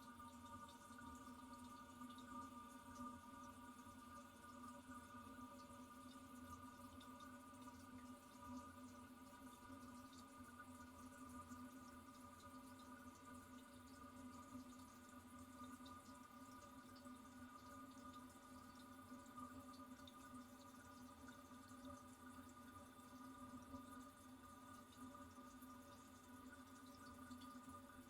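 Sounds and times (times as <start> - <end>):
toilet cistern refilling hum: 0.0 - 28.0
water drips: 0.1 - 28.0.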